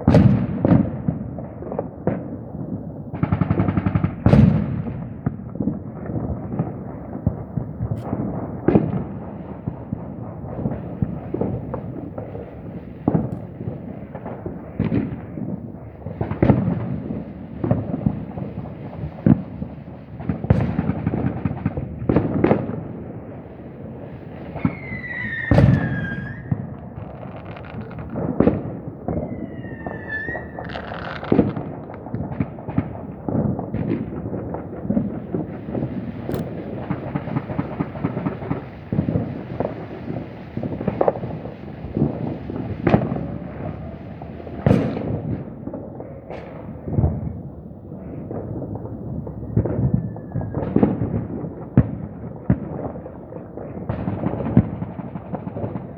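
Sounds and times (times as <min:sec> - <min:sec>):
firecrackers crackling: 0:00.0 - 0:55.9
firework bangs: 0:00.0 - 0:55.9
falling firework whistle: 0:24.5 - 0:32.0, 0:49.3 - 0:51.0.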